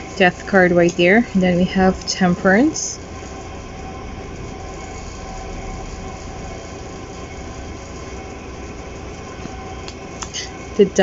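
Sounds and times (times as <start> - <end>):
faint steady tones: 0.0 - 11.0
machine humming with low rumble: 0.0 - 11.0.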